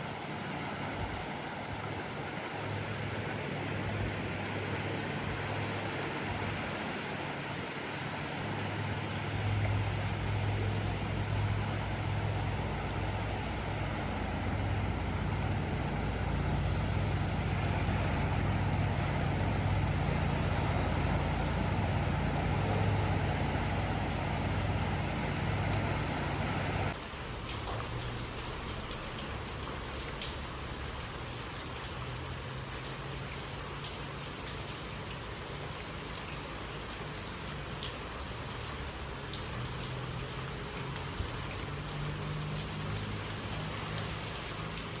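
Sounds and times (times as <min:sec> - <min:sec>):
ocean surf: 0:00.0 - 0:27.0
hissing water ambience: 0:00.0 - 0:45.0.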